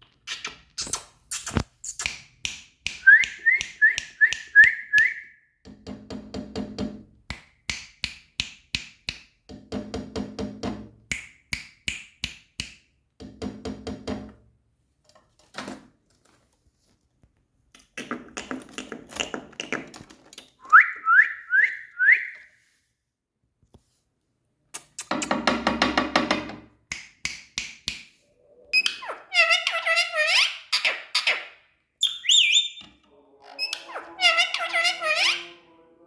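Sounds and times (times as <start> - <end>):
parrot rising whistles: 32.0 - 32.8
parrot buzzy chatter: 33.4 - 35.7.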